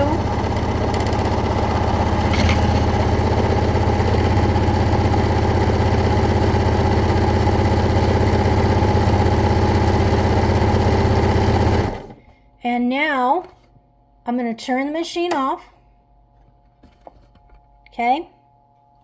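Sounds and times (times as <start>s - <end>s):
electric sewing machine running: 0.0s - 12.2s.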